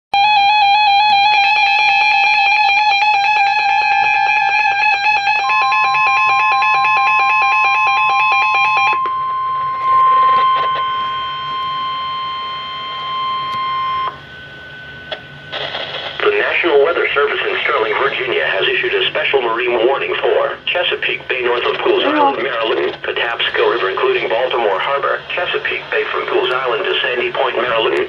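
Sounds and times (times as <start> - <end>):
steady alarm tone: 0.2 - 16.0, 21.9 - 22.6
radio hiss: 15.5 - 28.0
warbling electronic tone: 22.0 - 22.6.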